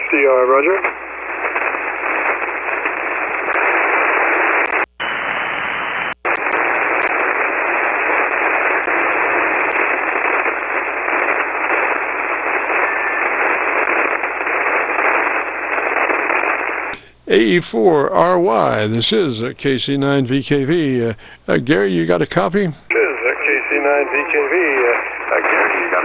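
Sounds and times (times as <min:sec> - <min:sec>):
shortwave radio static hiss: 0:00.0 - 0:26.0.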